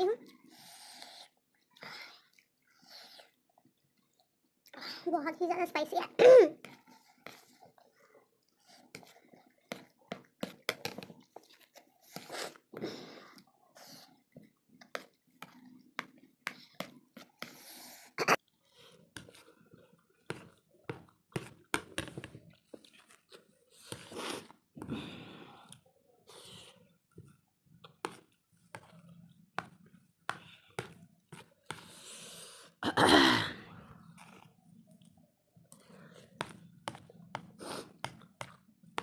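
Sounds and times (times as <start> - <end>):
person chewing crunchy food: 33.8 - 39.0.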